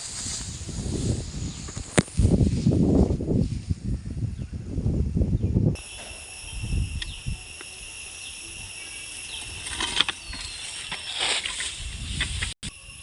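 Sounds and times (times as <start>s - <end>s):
high-pitched insect drone: 5.8s - 13.0s.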